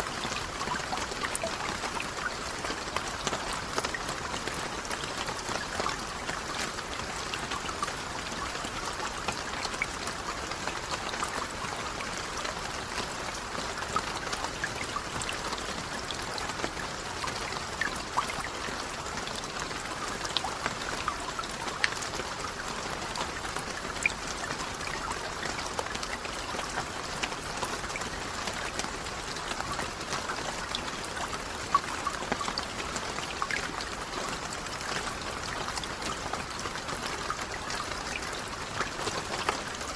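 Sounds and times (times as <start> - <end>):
rain drops pattering: 0.0 - 39.9
trickle of water: 0.0 - 39.9.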